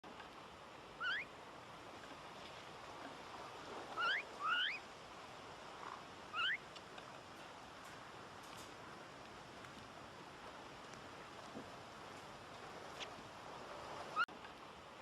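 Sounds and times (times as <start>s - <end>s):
faint steady hiss: 0.0s - 15.0s
myna rising whistled calls: 1.0s - 1.3s, 4.0s - 4.8s, 6.3s - 6.6s.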